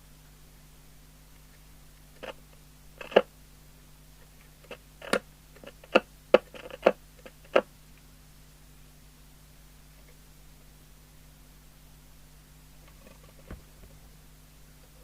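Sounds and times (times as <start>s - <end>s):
faint steady hum: 0.0s - 15.0s
radio controls clicking: 2.2s - 2.4s, 3.0s - 3.3s, 4.6s - 7.7s.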